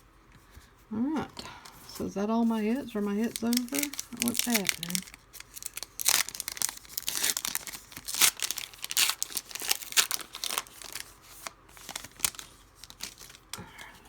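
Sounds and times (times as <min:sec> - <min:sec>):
plastic wrapper tearing and crinkling: 0:03.1 - 0:13.6.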